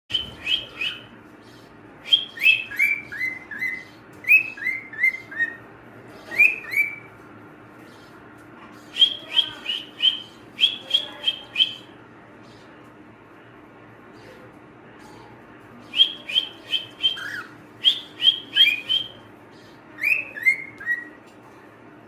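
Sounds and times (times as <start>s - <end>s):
cockatiel chirping: 16.0s - 19.1s.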